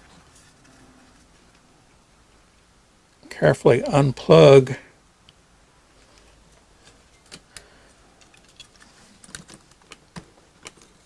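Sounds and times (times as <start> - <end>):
small parts clicking and tapping: 6.0 - 11.0.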